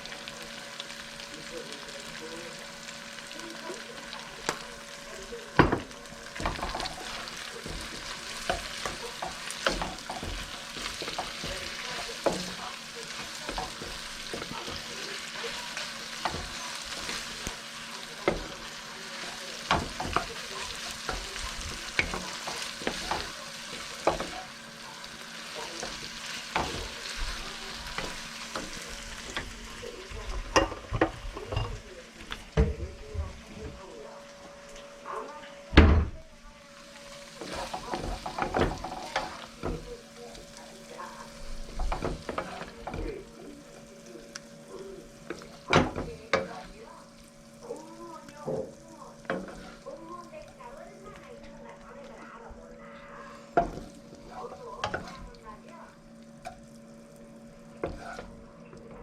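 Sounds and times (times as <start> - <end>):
fried rice sizzling in a pan: 0.0 - 59.0
utensil knocking and scraping pan: 5.6 - 15.0.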